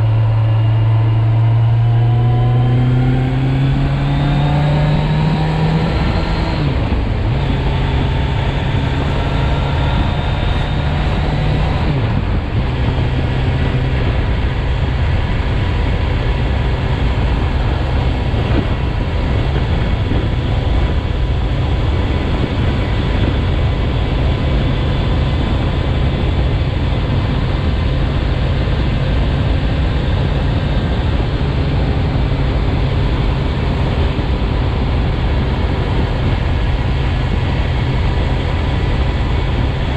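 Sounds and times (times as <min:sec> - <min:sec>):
motorcycle engine accelerating: 0:00.0 - 0:39.9
wind noise rushing: 0:00.0 - 0:39.9.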